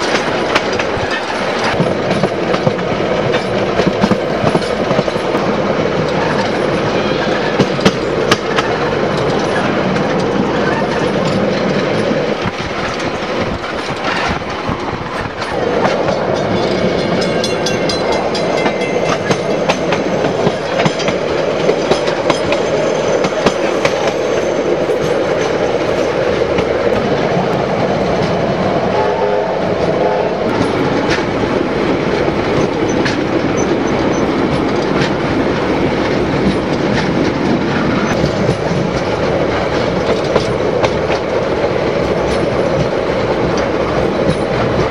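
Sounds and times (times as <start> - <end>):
wheels clicking over rail joints: 0.0 - 28.8, 29.8 - 44.9
train rolling along track: 0.0 - 44.9.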